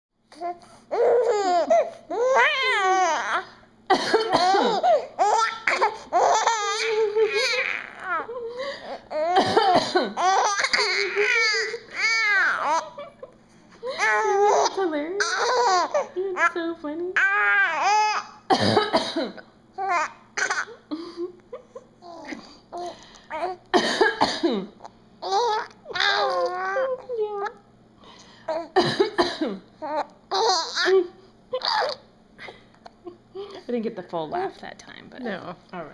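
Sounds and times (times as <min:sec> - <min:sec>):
baby laughing: 0:00.9 - 0:03.5, 0:04.3 - 0:16.5, 0:19.8 - 0:22.5, 0:25.2 - 0:27.0, 0:29.8 - 0:32.1
infant squealing and babbling: 0:00.9 - 0:03.6, 0:04.7 - 0:08.3, 0:10.2 - 0:12.8, 0:14.0 - 0:16.1, 0:17.2 - 0:18.3, 0:25.2 - 0:27.1, 0:31.6 - 0:32.0
woman coughing: 0:03.9 - 0:05.0, 0:09.1 - 0:11.7, 0:18.5 - 0:19.4, 0:23.7 - 0:24.8, 0:28.7 - 0:29.7.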